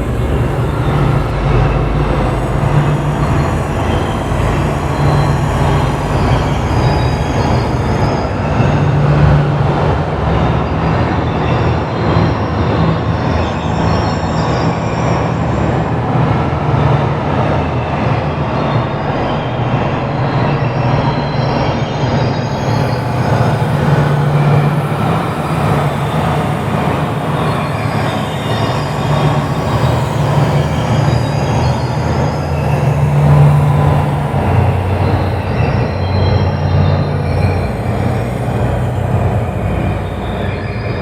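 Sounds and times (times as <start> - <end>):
high whistling tones: 0.0 - 10.2, 20.9 - 41.0
dense rumbling drone: 0.0 - 41.0.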